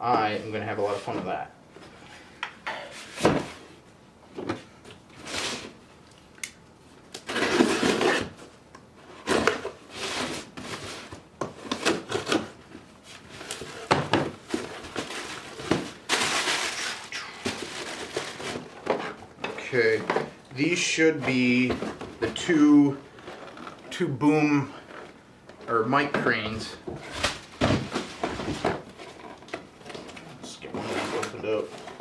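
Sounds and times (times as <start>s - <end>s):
packaging rustling and scraping: 7.2s - 32.0s.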